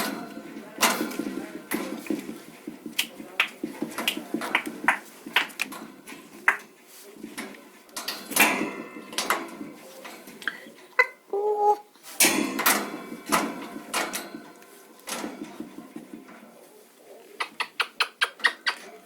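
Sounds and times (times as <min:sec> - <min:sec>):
beak and feet knocking on cage: 0:00.0 - 0:10.5, 0:12.2 - 0:16.5
parrot mumbling speech-like sounds: 0:11.3 - 0:11.9
parrot clicking: 0:17.4 - 0:18.8.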